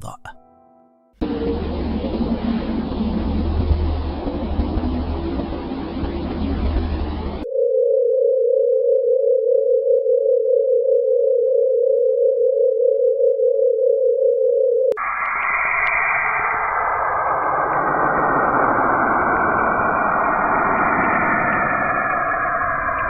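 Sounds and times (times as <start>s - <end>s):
wide rumbling noise: 1.2s - 7.5s, 15.0s - 23.0s
steady pulsing tone: 1.2s - 13.6s, 15.0s - 23.0s.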